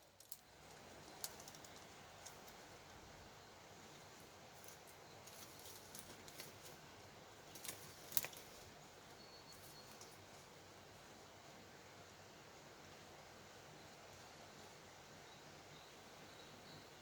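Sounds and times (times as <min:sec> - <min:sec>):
campfire crackling: 0:00.0 - 0:03.2.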